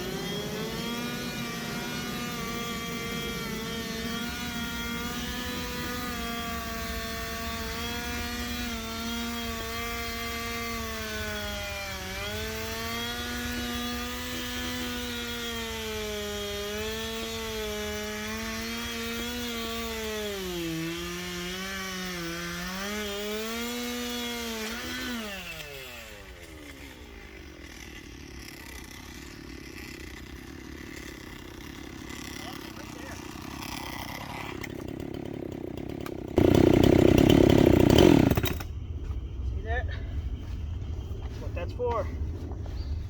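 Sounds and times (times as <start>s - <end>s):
chainsaw cutting wood: 0.0s - 38.8s.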